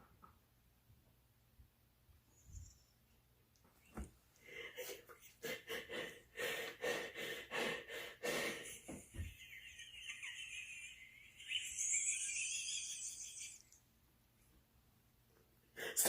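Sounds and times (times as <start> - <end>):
person laughing breathlessly: 4.4 - 13.7.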